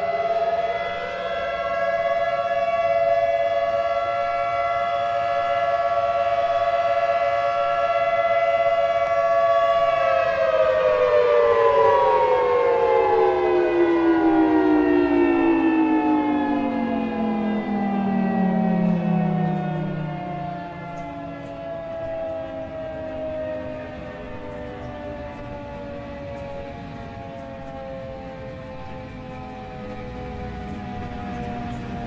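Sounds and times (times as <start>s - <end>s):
tornado warning siren: 0.0s - 32.0s.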